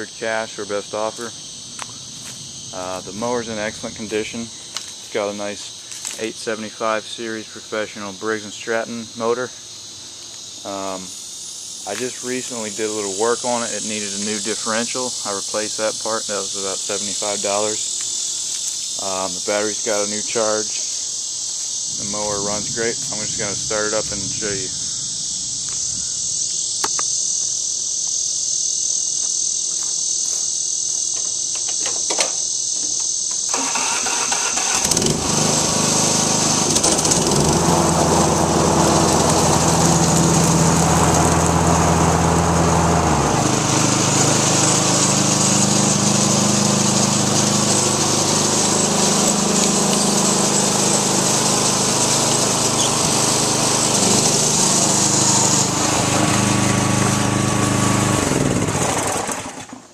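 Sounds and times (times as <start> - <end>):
riding mower engine running: 0.0 - 5.1, 18.5 - 20.9, 21.6 - 27.9, 33.3 - 59.9
crickets chirping: 0.0 - 59.9.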